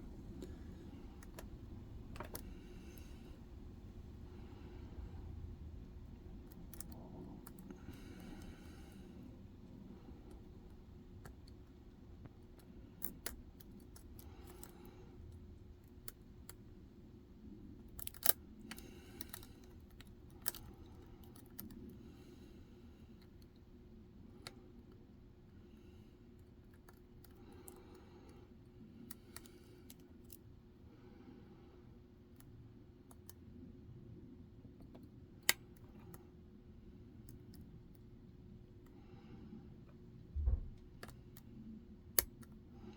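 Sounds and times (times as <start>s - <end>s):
low steady hum: 0.0s - 42.9s
lock pick clicking and scraping: 6.5s - 9.2s, 12.4s - 16.7s, 17.6s - 22.1s
lock pick metallic clicks: 17.9s - 21.8s.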